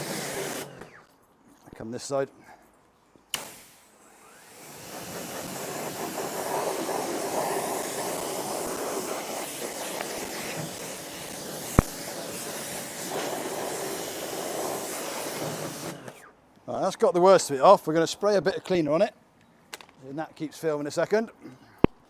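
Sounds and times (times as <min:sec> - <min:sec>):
pressure washer spraying water: 0:00.0 - 0:00.9, 0:03.4 - 0:16.2.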